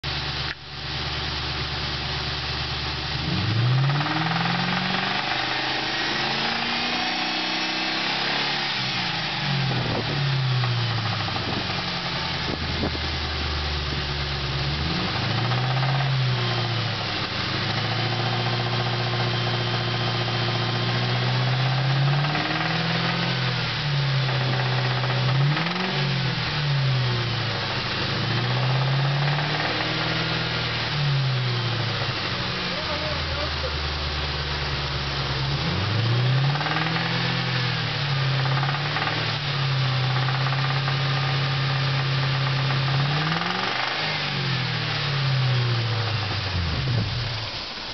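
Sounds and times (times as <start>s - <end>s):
car engine revving: 0.0s - 47.9s
engine knock: 9.7s - 13.1s, 20.2s - 23.3s, 24.3s - 26.0s, 31.8s - 34.2s, 36.5s - 44.2s.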